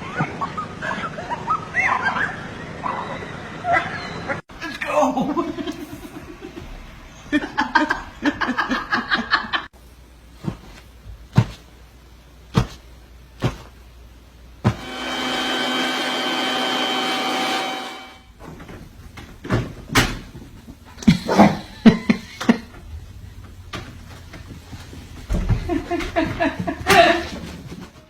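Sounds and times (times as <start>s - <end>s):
electric appliance motor whining: 14.7s - 18.3s
person chuckling: 21.0s - 22.9s.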